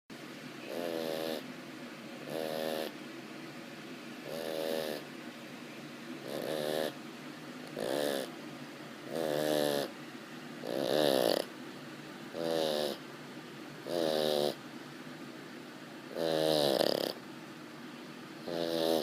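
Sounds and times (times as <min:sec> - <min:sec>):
dog snoring: 0:00.7 - 0:01.5, 0:02.2 - 0:03.0, 0:04.2 - 0:05.1, 0:06.2 - 0:07.0, 0:07.7 - 0:08.3, 0:09.0 - 0:10.0, 0:10.6 - 0:11.5, 0:12.3 - 0:13.0, 0:13.8 - 0:14.6, 0:16.1 - 0:17.2, 0:18.4 - 0:19.0
dog breathing: 0:04.2 - 0:05.1, 0:06.2 - 0:07.0, 0:07.7 - 0:08.3, 0:09.1 - 0:10.0, 0:10.6 - 0:11.5, 0:13.9 - 0:14.6, 0:16.1 - 0:17.2, 0:18.5 - 0:19.0.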